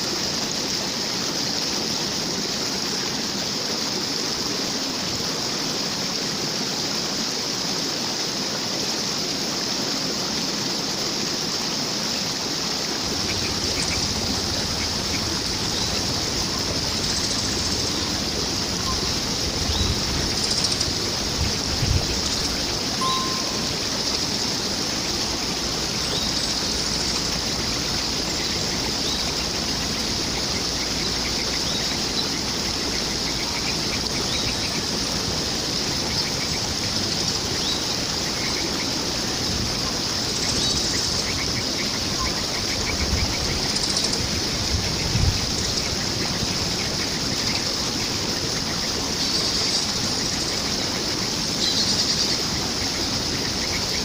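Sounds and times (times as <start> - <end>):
rushing water: 0.0 - 54.0
bird chirps and trills: 13.1 - 34.9.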